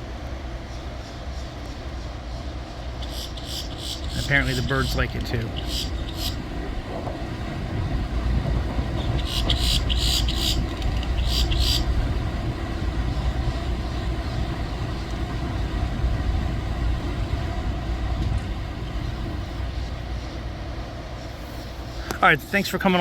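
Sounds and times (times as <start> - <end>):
bird chirping: 3.0 - 6.4, 9.0 - 11.9
low rumble: 4.2 - 21.2.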